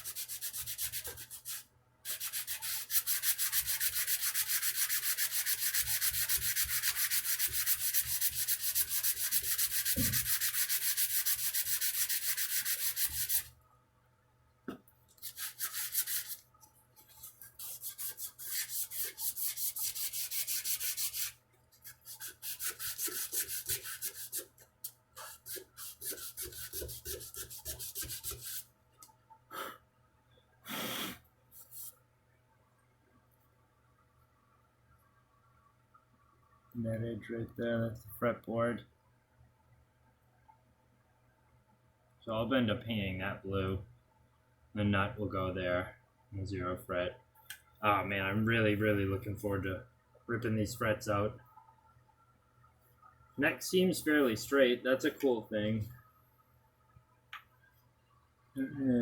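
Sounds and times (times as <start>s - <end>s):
sandpaper rubbing on wood: 0.0s - 13.5s, 15.2s - 16.4s, 17.2s - 24.5s, 25.2s - 28.6s.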